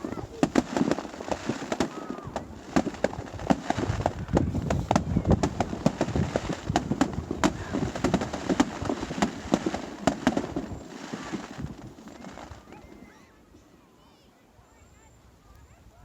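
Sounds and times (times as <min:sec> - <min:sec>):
low rumble of booms: 0:00.0 - 0:12.6
fireworks bangs and crackles: 0:00.0 - 0:13.1.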